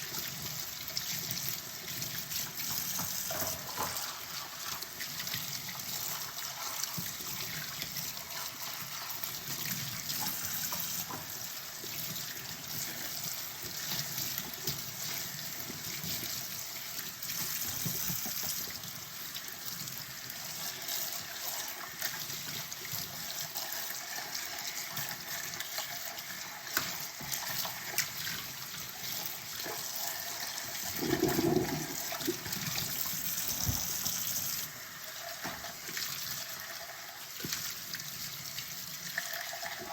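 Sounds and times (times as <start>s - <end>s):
tap running into sink: 30.9s - 34.5s.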